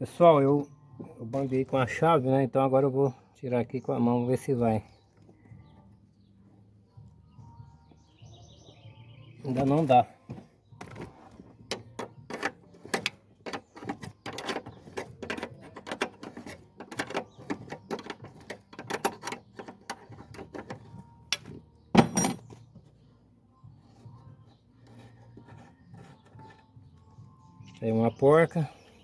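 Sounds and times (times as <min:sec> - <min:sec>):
metal clack: 0:21.3 - 0:22.5.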